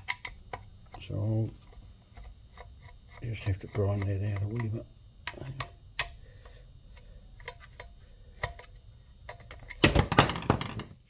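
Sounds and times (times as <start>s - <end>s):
tools clicking and tapping: 2.2s - 6.2s
loud clatter of knocks: 9.8s - 11.0s.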